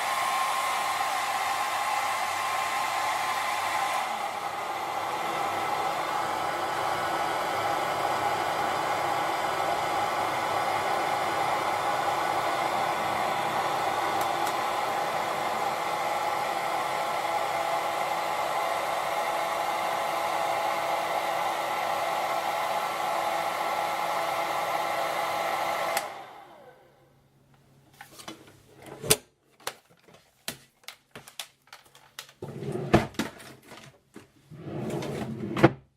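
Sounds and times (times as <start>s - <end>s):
hair dryer blowing: 0.0s - 27.0s.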